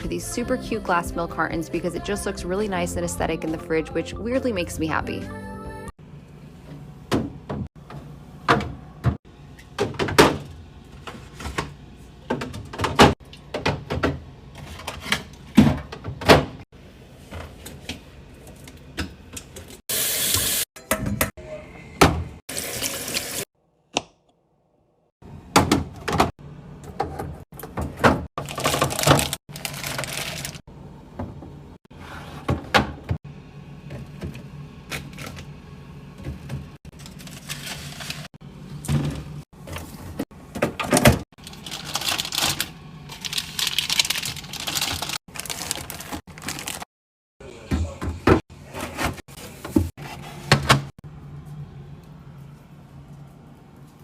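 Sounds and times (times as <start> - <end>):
kitchen tap running: 22.5 - 23.4.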